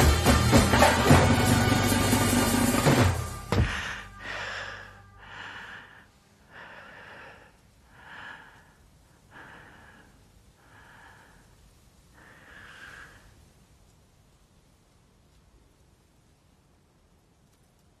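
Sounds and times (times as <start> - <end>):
person breathing heavily: 3.4 - 13.5.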